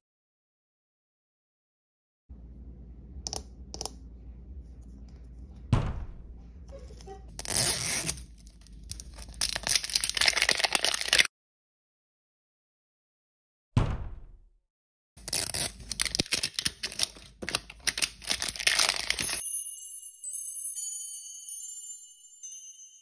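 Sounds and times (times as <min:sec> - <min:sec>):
thump: 0:05.7 - 0:06.3, 0:13.8 - 0:14.5
packaging tearing and crinkling: 0:07.3 - 0:11.3, 0:15.2 - 0:19.4.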